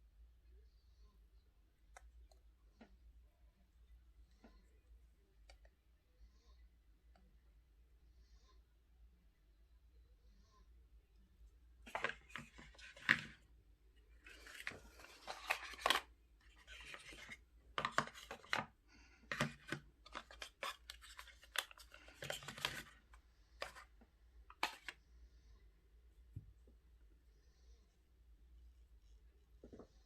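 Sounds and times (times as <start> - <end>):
packaging rustling and scraping: 19.3 - 23.0.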